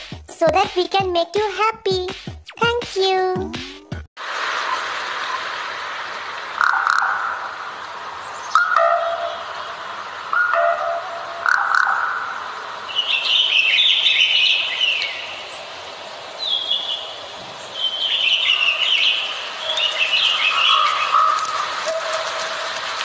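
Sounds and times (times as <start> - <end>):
birds chirping and twittering: 6.6 - 23.0.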